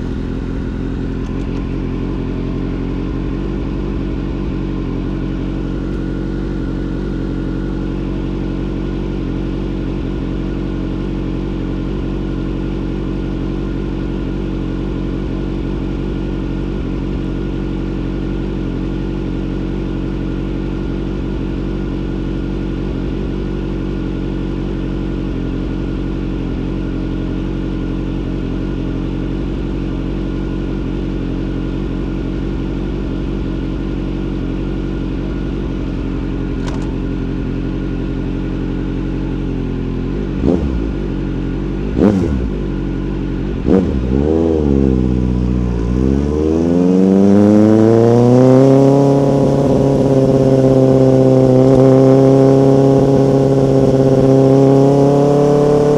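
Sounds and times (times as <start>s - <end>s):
motorcycle throttle blips: 0.0s - 2.4s, 36.4s - 38.0s, 39.1s - 55.9s
motorcycle engine idling: 0.0s - 46.4s, 48.9s - 55.9s.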